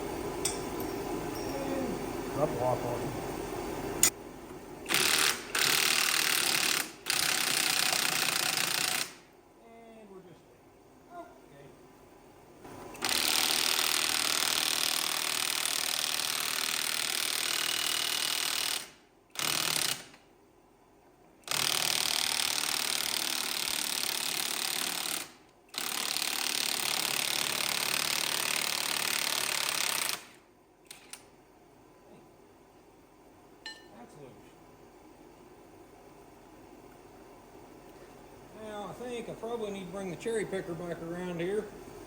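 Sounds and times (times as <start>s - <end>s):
impact wrench hammering: 0.4s - 1.5s, 4.9s - 9.2s.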